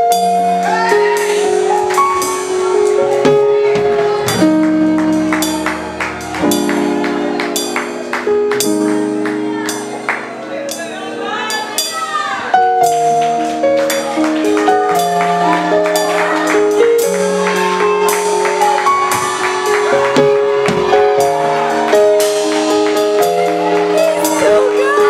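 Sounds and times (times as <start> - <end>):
sharp percussion hits: 1.2 - 13.3.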